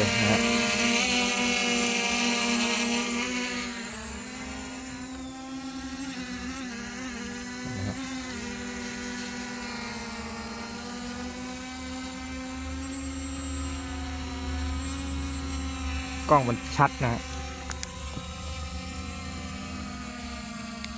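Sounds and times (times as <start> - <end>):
drone motors whining: 0.0 - 20.9.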